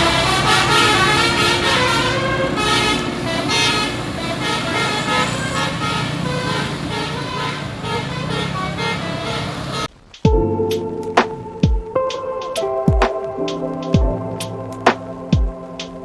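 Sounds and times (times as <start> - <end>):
musical bus horn playing a tune: 0.0 - 9.9.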